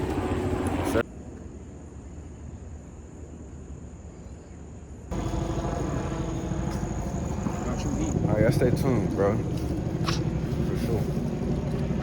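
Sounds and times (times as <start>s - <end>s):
faint high whine: 0.0s - 8.6s.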